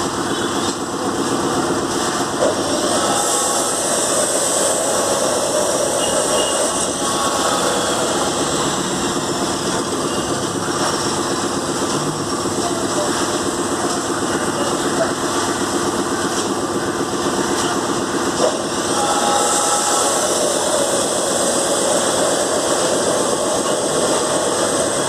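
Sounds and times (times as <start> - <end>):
piling machine engine running: 0.0 - 25.0.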